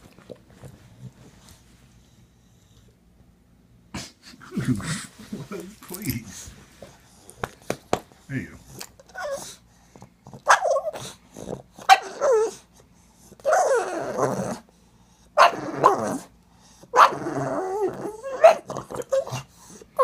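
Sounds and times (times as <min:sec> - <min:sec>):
dog making growly bark-like calls: 0:13.4 - 0:14.6, 0:15.4 - 0:16.3, 0:16.9 - 0:20.0.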